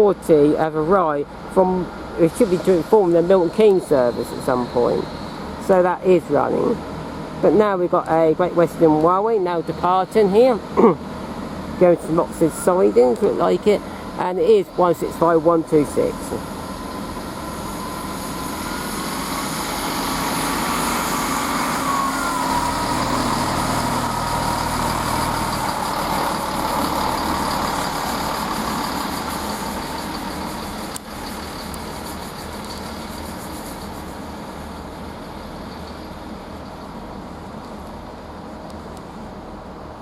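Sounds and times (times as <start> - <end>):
diesel train engines under power: 0.0 - 40.0
wheels rumbling on rails: 0.0 - 40.0
high whine: 11.6 - 37.7.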